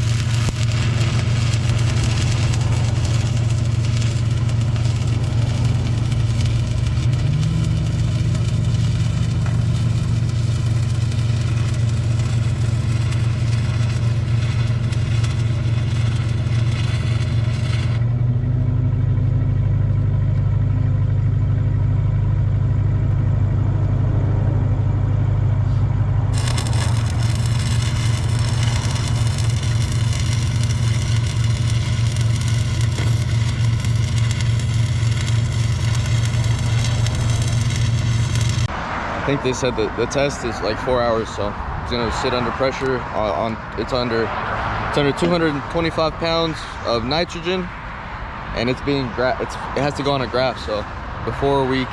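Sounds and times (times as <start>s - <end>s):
welding arc crackling and hissing: 0.0s - 18.0s, 26.3s - 38.7s
welding machine engine droning: 0.0s - 47.8s.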